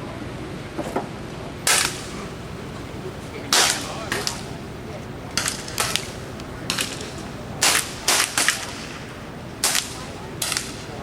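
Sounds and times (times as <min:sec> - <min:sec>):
steady background hiss: 0:00.0 - 0:11.0
air rifles firing: 0:01.6 - 0:11.0.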